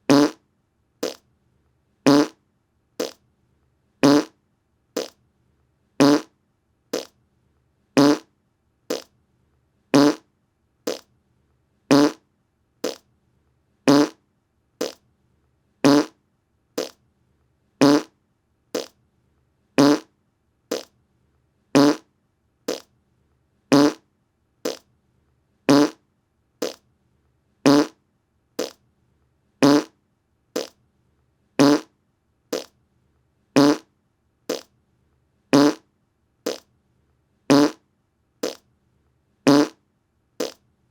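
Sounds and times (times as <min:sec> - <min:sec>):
short fart sound: 0:00.1 - 0:00.4, 0:01.0 - 0:01.2, 0:02.1 - 0:02.4, 0:03.0 - 0:03.2, 0:04.0 - 0:04.4, 0:05.0 - 0:05.2, 0:06.0 - 0:06.3, 0:08.0 - 0:08.3, 0:08.9 - 0:09.1, 0:10.0 - 0:10.2, 0:10.9 - 0:11.1, 0:11.9 - 0:12.2, 0:12.8 - 0:13.0, 0:13.9 - 0:14.2, 0:14.8 - 0:15.0, 0:15.8 - 0:16.2, 0:16.8 - 0:17.0, 0:17.8 - 0:18.1, 0:18.8 - 0:19.0, 0:19.8 - 0:20.1, 0:20.7 - 0:20.9, 0:21.8 - 0:22.1, 0:22.7 - 0:22.9, 0:23.7 - 0:24.0, 0:24.6 - 0:24.9, 0:25.7 - 0:26.0, 0:26.6 - 0:26.8, 0:27.7 - 0:28.0, 0:28.6 - 0:28.8, 0:29.6 - 0:30.0, 0:30.6 - 0:30.8, 0:31.6 - 0:31.9, 0:32.5 - 0:32.8, 0:33.6 - 0:33.9, 0:34.5 - 0:34.7, 0:35.6 - 0:35.8, 0:36.5 - 0:36.7, 0:37.5 - 0:37.8, 0:38.4 - 0:38.6, 0:39.5 - 0:39.8, 0:40.4 - 0:40.6.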